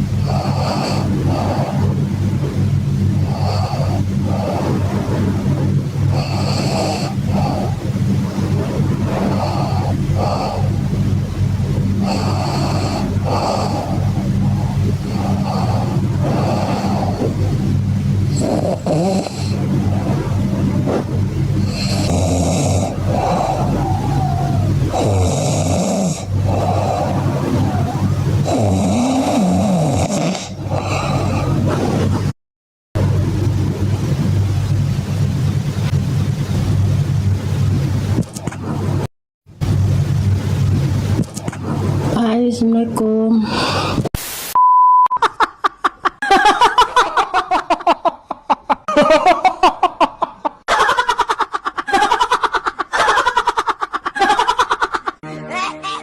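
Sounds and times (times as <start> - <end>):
person snoring loudly: 0.0 - 2.1, 3.2 - 11.0, 12.0 - 17.7, 18.3 - 32.3
short beep: 44.6 - 45.2
high-pitched rapid laughter: 45.2 - 56.0.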